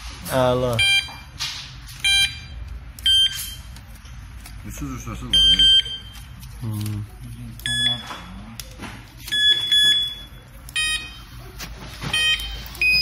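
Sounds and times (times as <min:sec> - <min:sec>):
bite alarm electronic beeps: 0:00.8 - 0:01.4, 0:02.0 - 0:03.7, 0:05.3 - 0:06.2, 0:07.6 - 0:08.3, 0:09.3 - 0:11.4, 0:12.1 - 0:13.0.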